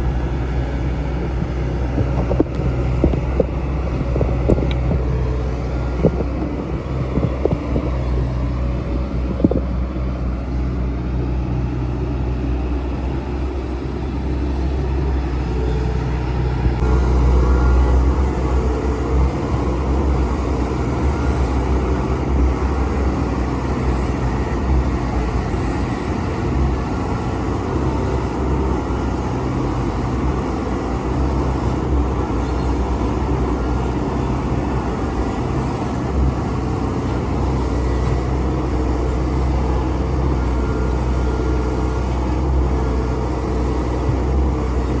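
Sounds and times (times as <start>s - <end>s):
excavator diesel engine droning: 0.0s - 45.0s.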